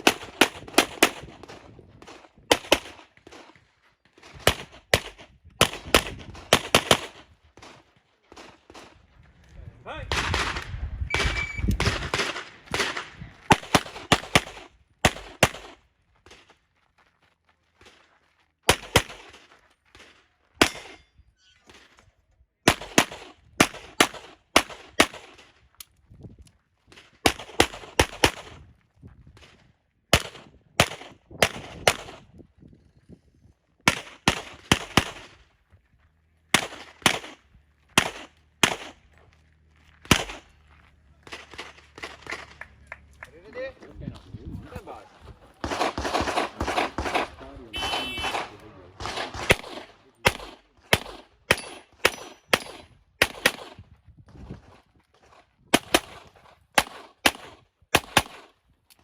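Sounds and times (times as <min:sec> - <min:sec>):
pistol shots: 0:00.0 - 0:03.4, 0:04.3 - 0:08.9, 0:10.1 - 0:16.4, 0:18.7 - 0:21.0, 0:22.6 - 0:25.5, 0:27.2 - 0:28.6, 0:30.1 - 0:32.2, 0:33.8 - 0:35.4, 0:36.5 - 0:39.2, 0:40.0 - 0:40.5, 0:45.6 - 0:53.9, 0:55.7 - 0:58.6.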